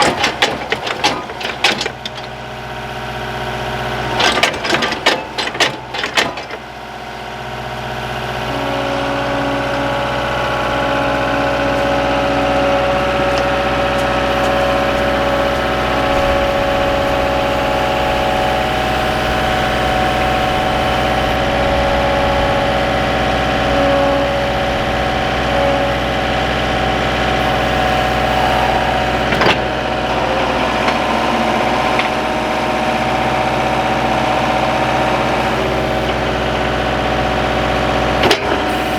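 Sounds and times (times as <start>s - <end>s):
skid steer engine running: 0.0s - 38.9s.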